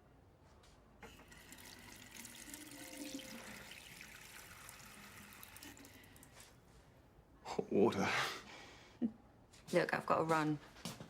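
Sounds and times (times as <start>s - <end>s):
water tap turned on: 1.0s - 6.0s
water running into a sink: 1.0s - 6.3s.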